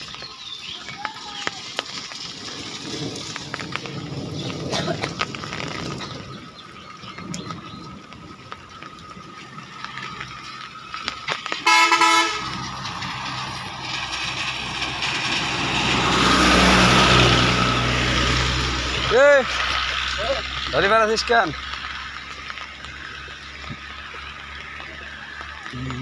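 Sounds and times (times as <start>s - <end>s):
vehicle engine approaching: 1.4s - 26.0s
vehicle horn honk: 11.6s - 12.6s.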